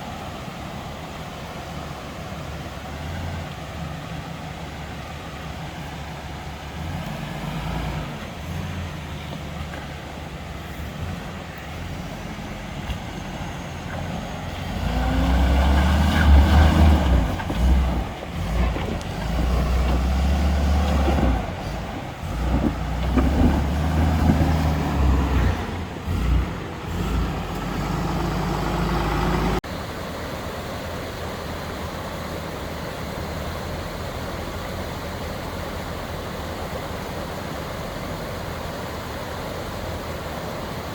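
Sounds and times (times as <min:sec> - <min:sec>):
vee eight engine revving: 0:02.8 - 0:29.7.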